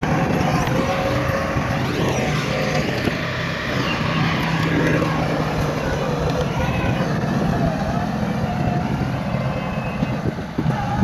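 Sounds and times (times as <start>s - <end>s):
diesel machinery engine drone: 0.0s - 11.0s.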